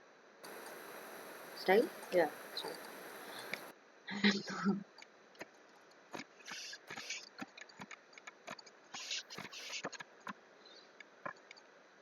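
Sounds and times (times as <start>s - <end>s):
short hissy sounds: 0.4s - 3.7s, 9.0s - 9.9s.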